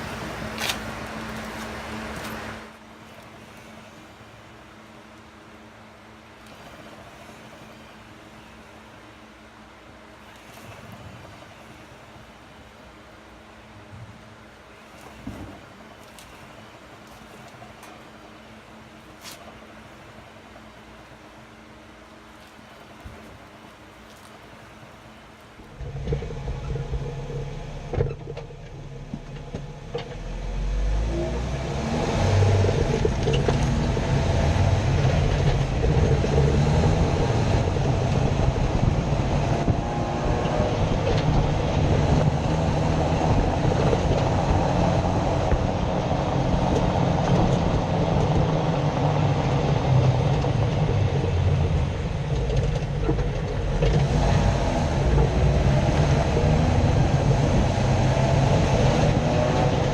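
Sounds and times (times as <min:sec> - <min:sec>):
vehicle running gear and road noise: 0:00.0 - 0:59.9
loud rumbling grind: 0:25.6 - 0:59.9.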